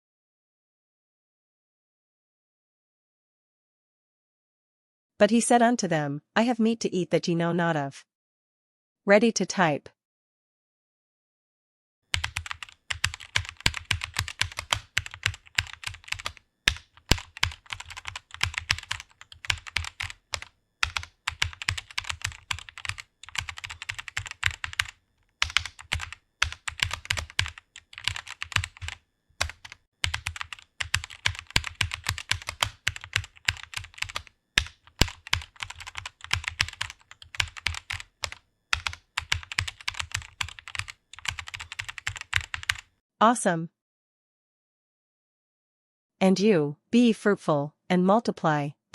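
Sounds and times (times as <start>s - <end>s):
fast typing on keyboard: 12.1s - 42.9s.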